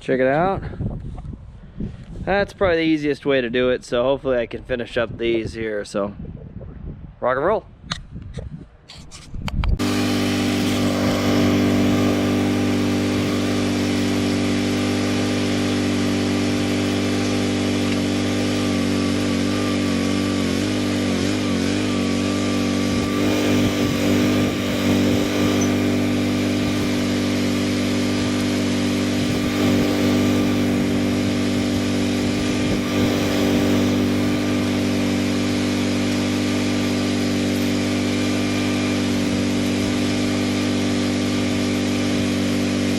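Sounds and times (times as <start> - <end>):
mini skid steer engine running: 9.8 - 42.9.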